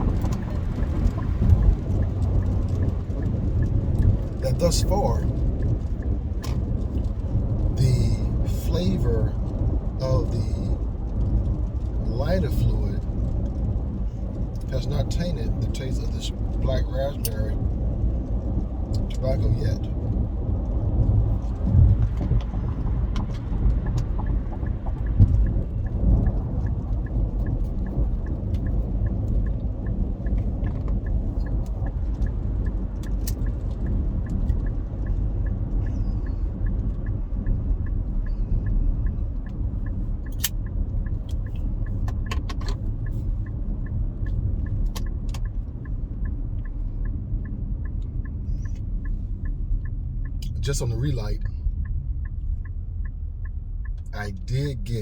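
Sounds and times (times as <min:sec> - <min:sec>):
car cabin road rumble: 0:00.0 - 0:55.0
turn signal ticking: 0:00.0 - 0:55.0.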